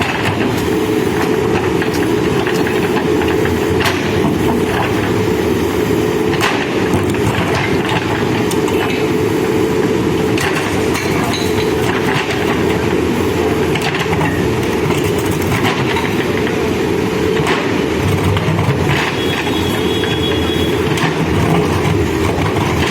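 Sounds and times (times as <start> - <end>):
diesel engine running under load: 0.0 - 22.9.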